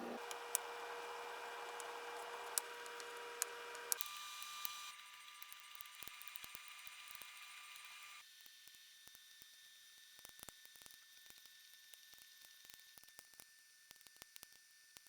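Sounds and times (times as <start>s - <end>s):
faint hiss and hum: 0.0s - 4.0s.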